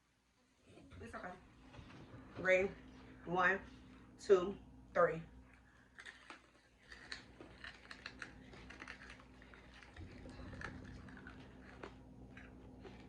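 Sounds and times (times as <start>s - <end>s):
people crunching candy: 5.8s - 13.0s.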